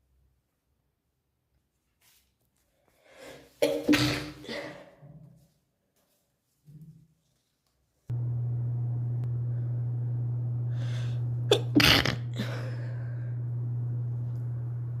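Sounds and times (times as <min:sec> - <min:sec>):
girl stifling a sneeze: 0:03.6 - 0:05.0
steady low hum: 0:08.1 - 0:15.0.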